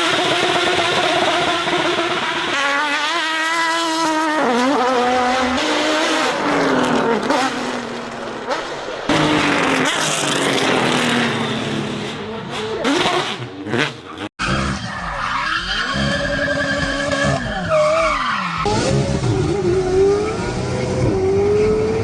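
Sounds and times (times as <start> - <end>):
car engines revving: 0.0 - 22.0
tyres squealing and skidding: 11.3 - 20.1.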